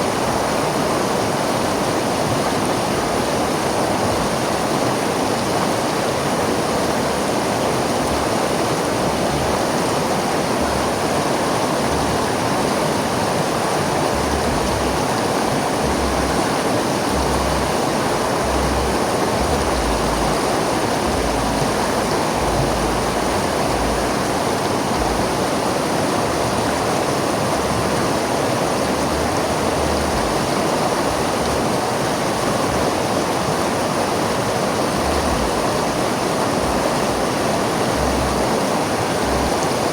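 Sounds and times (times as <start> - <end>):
river water rushing: 0.0 - 39.9
low rumble: 14.1 - 15.1, 15.8 - 16.5, 17.1 - 25.4, 28.9 - 30.5, 35.0 - 36.0, 36.6 - 37.2, 38.0 - 38.4.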